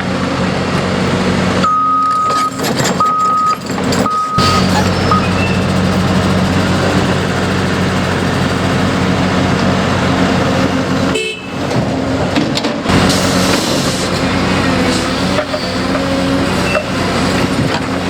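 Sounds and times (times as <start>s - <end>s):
diesel engines running: 0.0s - 18.0s
brief high tone: 4.1s - 5.7s.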